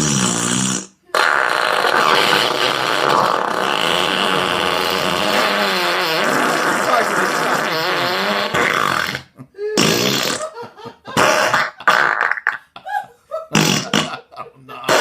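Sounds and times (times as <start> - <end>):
smart speaker garbled warbling noise: 1.2 - 8.7.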